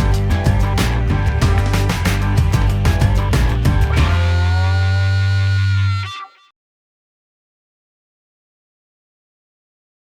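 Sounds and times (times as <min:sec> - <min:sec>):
rock music with guitar and drums: 0:00.0 - 0:04.9.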